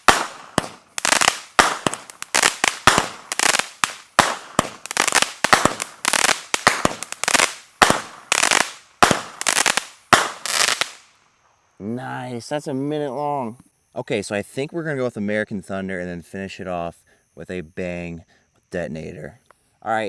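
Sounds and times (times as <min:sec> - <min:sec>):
fireworks cake sharp reports: 0:00.0 - 0:11.0
crackling small pops: 0:00.0 - 0:11.3.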